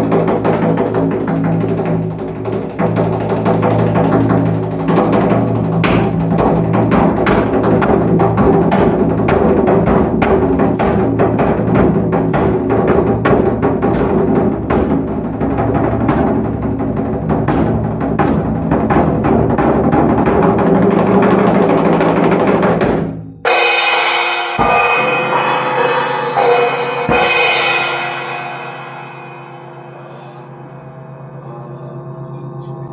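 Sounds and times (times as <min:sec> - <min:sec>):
fast solo drumming: 0:00.0 - 0:25.5
wood-block or rim strikes: 0:05.8 - 0:15.2, 0:16.0 - 0:20.8, 0:22.8 - 0:30.0
sustained low drone: 0:28.8 - 0:32.9.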